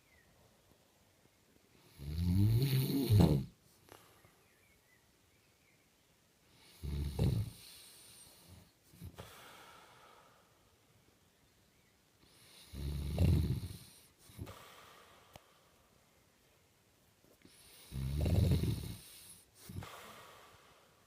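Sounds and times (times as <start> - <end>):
man snoring: 1.9 - 3.5, 6.6 - 7.8, 12.4 - 14.0, 17.8 - 20.3
soft breath: 3.6 - 4.8, 7.4 - 11.0, 13.8 - 16.6, 19.0 - 21.0.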